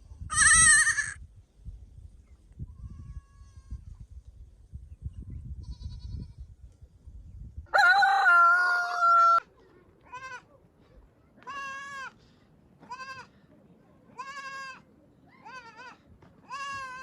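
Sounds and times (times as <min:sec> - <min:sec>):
short bleat: 0:00.3 - 0:01.2
rooster crowing: 0:07.7 - 0:09.4.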